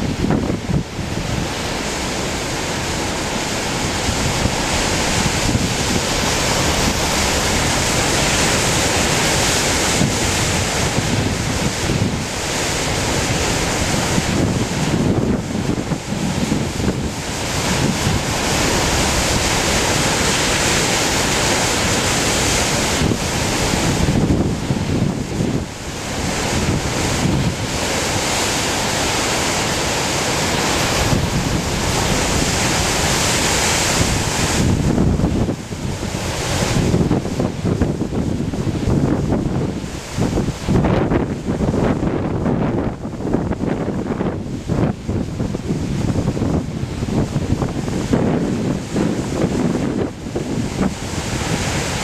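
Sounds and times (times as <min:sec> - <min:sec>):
heavy ocean surf breaking: 0:00.0 - 0:52.0
wind buffeting microphone: 0:00.0 - 0:52.0.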